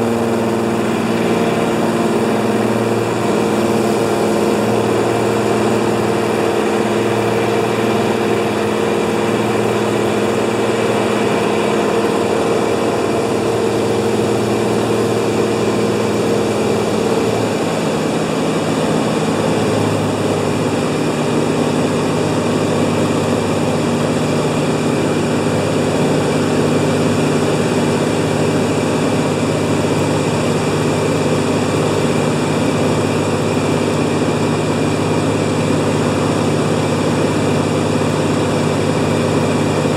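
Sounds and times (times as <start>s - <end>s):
floatplane engine and propeller: 0.0s - 39.9s.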